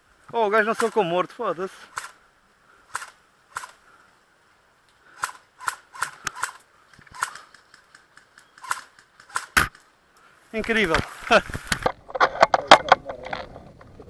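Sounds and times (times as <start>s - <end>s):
airsoft gun clicks and snaps: 5.2s - 11.9s.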